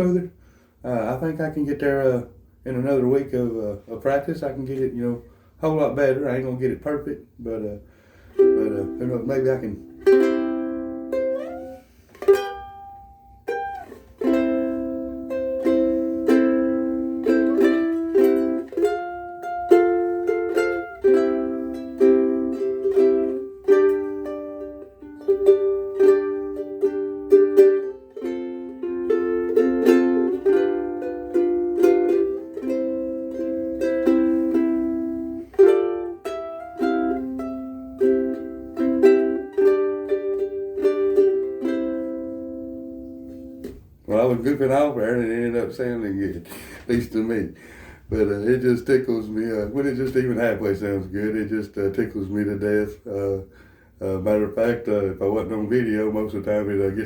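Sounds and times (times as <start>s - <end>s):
ukulele chords strummed: 8.4s - 44.9s.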